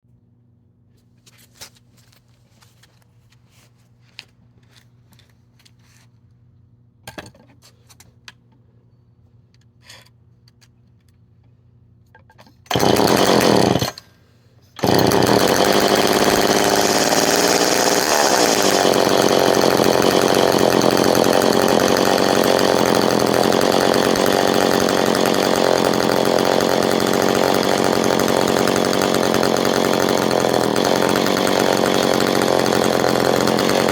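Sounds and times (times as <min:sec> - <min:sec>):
chainsaw engine running: 0:12.7 - 0:14.0, 0:14.8 - 0:33.9.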